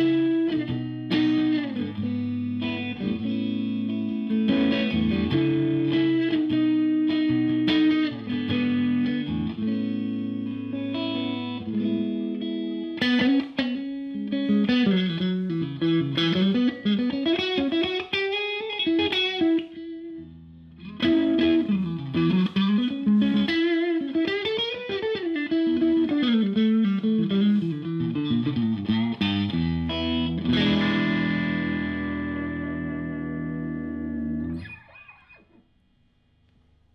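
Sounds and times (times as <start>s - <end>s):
electric guitar chord ringing: 0.0s - 35.6s
electric guitar melodic runs: 0.0s - 35.6s.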